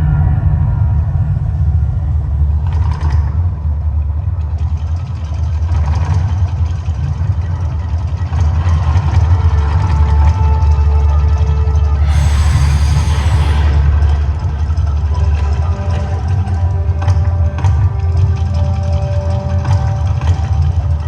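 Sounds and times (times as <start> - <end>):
hissing surges: 12.0 - 15.2
deep eruption effect rumble: 12.0 - 16.6.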